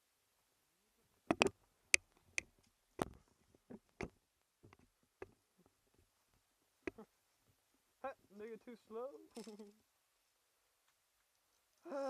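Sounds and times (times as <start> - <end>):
sharp clicks and snaps: 1.3 - 2.5.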